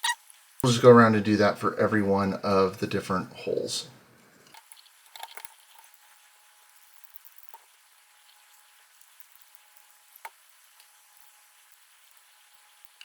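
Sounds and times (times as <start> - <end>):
steady faint hiss: 0.2 - 4.9.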